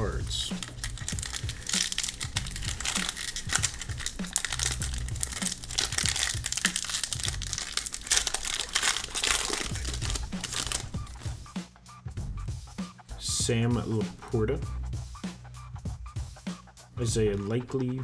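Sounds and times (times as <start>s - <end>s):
wrapper crinkling and tearing: 0.0s - 11.4s.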